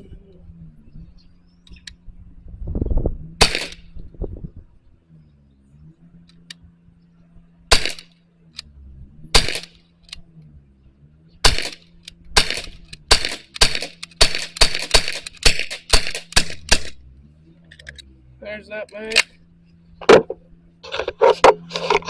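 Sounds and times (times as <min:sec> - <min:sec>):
bb pistol shots cracking: 0:03.4 - 0:03.9, 0:07.7 - 0:08.2, 0:09.3 - 0:09.8, 0:11.4 - 0:17.0.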